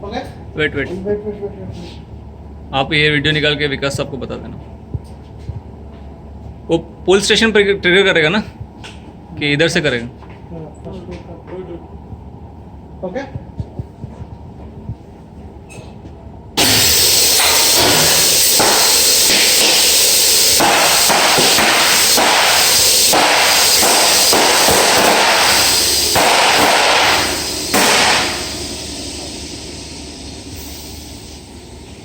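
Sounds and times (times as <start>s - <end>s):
gas hissing through pipes: 16.6s - 32.0s.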